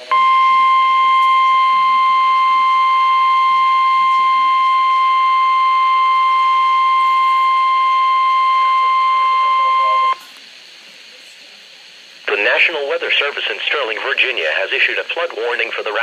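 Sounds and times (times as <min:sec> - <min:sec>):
emergency alert tone: 0:00.0 - 0:10.2.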